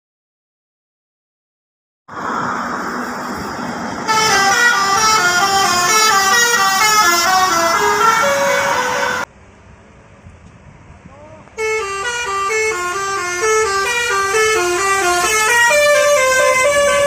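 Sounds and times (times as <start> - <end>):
steady rushing noise: 2.1 - 5.9
bus musical air horn tune: 4.0 - 9.3, 11.6 - 17.0.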